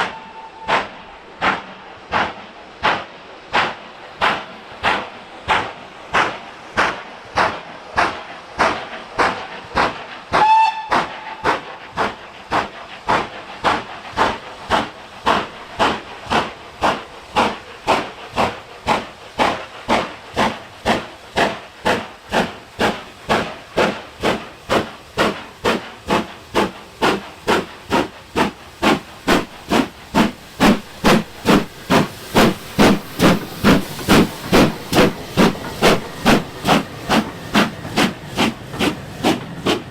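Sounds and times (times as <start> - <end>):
steam whistle toot: 0.0 - 1.1, 10.4 - 11.7
steam locomotive exhaust chuffing: 0.0 - 39.9.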